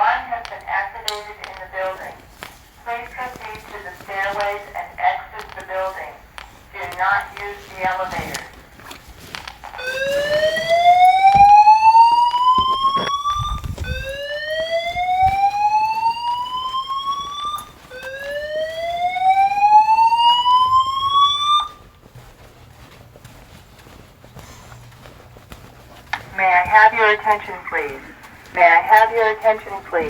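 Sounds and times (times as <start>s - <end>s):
fire alarm whoop tone: 6.8s - 22.0s, 26.2s - 30.0s.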